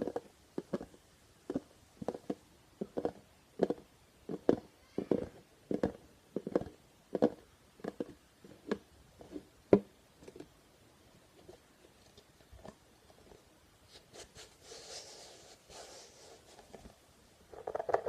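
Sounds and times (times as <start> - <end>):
plastic containers being tapped: 0.0 - 10.5.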